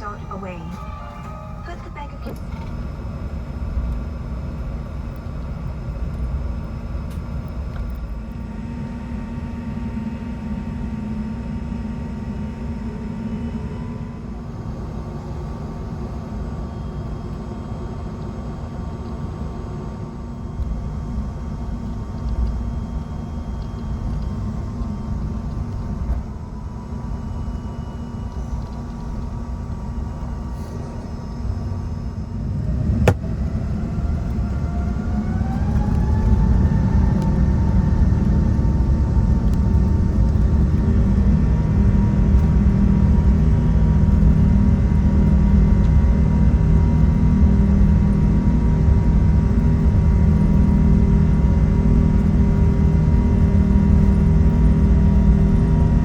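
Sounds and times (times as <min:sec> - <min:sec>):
faint steady tones: 0:00.0 - 0:18.4
aircraft cabin rumble: 0:00.0 - 0:18.5, 0:20.2 - 0:56.0.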